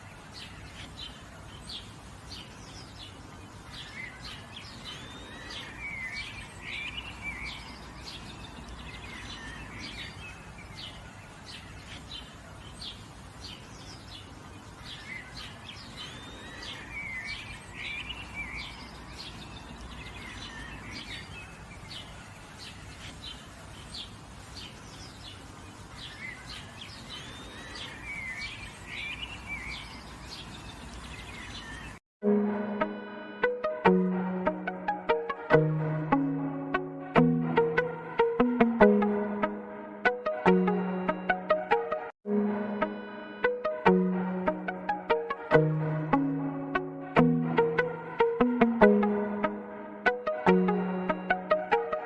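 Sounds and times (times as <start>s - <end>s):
forest ambience hiss: 0.0s - 31.9s
songbirds chirping and trilling: 0.0s - 32.0s
synthesizer music: 32.2s - 52.0s.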